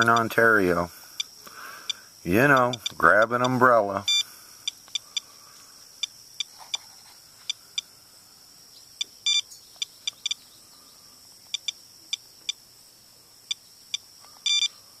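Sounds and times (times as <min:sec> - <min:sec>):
geiger counter beeping: 0:00.0 - 0:00.5, 0:01.2 - 0:05.3, 0:09.0 - 0:10.4, 0:11.5 - 0:12.6, 0:13.5 - 0:14.8.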